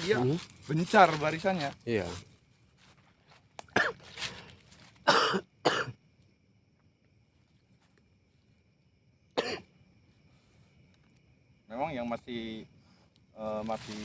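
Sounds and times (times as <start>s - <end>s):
person coughing: 3.7s - 4.0s, 5.0s - 6.0s, 9.4s - 9.7s.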